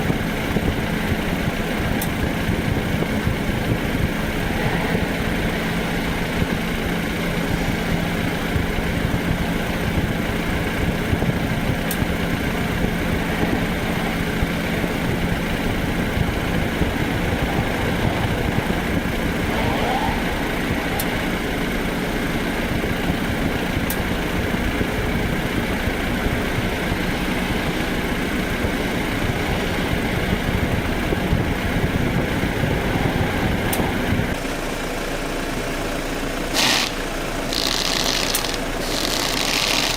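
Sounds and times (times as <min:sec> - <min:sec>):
car engine humming: 0:00.0 - 0:39.9.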